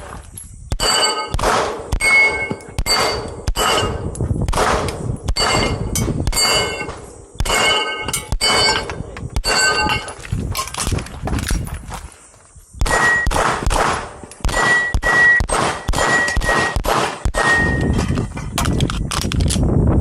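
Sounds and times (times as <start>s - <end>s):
steel targets clanging: 0.4s - 4.1s, 5.3s - 11.8s, 14.4s - 18.6s
handgun shots: 0.8s - 10.0s, 12.8s - 17.8s.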